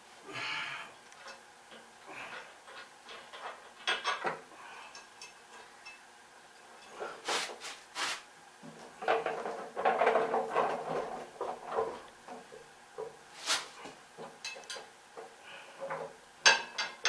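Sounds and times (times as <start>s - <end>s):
rattling clatter of metal: 9.0s - 12.5s.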